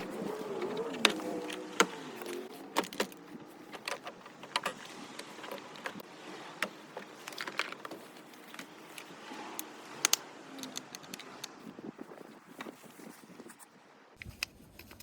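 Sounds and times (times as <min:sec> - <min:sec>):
tools clicking and clinking: 0:00.0 - 0:06.0, 0:10.0 - 0:11.6.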